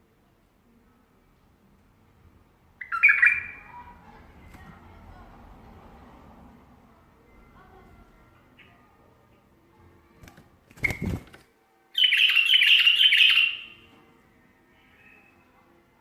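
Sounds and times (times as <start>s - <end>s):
bulbul warbling song: 12.0s - 13.8s.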